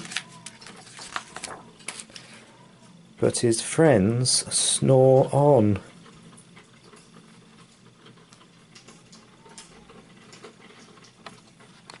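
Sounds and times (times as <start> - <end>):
small clicks and ticks: 5.8 - 12.0.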